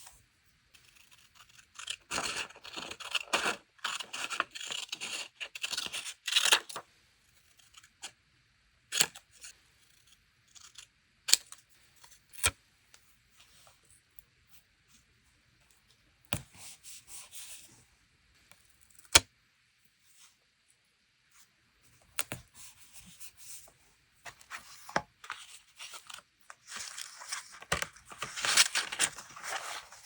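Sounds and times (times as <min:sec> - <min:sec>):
scissors cutting paper: 0:00.8 - 0:06.8.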